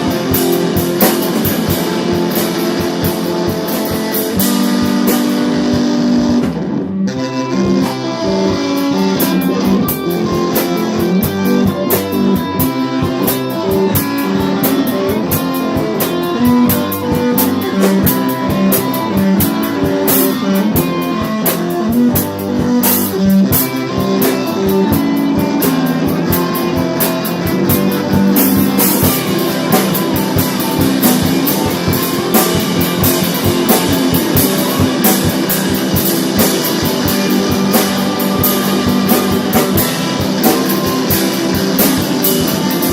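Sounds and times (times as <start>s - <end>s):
drum kit cymbals: 0.0s - 42.9s
rock band playing: 0.0s - 42.9s.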